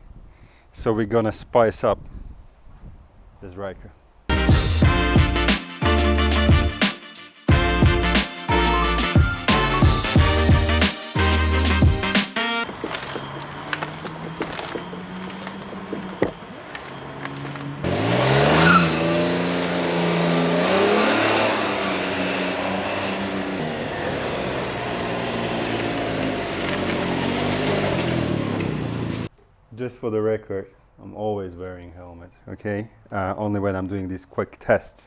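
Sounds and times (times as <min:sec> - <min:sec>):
trike engine idling and accelerating: 0:12.6 - 0:29.3.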